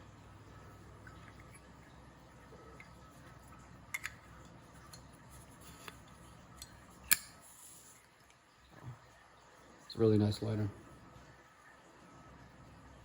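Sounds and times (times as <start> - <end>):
lighter clicks: 7.1 - 7.4.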